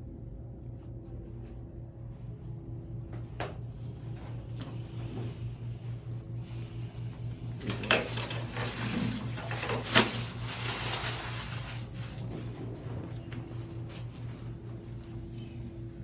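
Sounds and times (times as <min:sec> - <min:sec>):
clothing rustling: 0:08.3 - 0:15.2.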